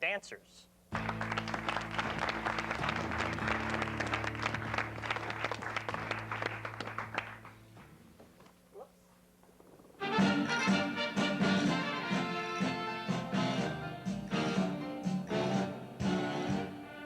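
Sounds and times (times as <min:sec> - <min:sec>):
audience applauding: 0:00.9 - 0:08.0
band holding low chords: 0:01.0 - 0:08.0, 0:10.0 - 0:17.0.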